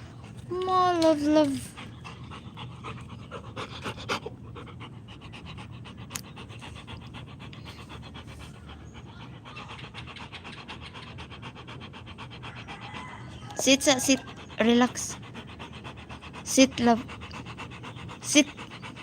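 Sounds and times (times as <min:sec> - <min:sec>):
dog panting: 0:00.0 - 0:19.0.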